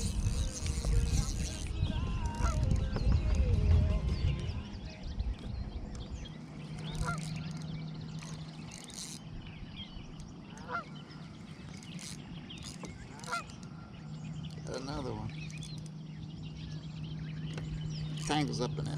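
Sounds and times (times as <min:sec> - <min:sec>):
geese honking: 0:10.6 - 0:11.2, 0:13.1 - 0:13.6.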